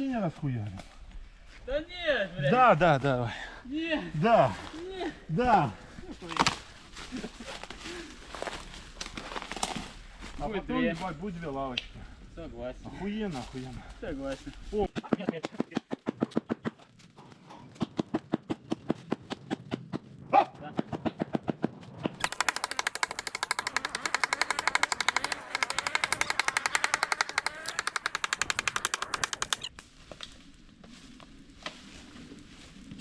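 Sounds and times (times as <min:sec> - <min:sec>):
rapid sharp knocks: 0:22.2 - 0:29.7.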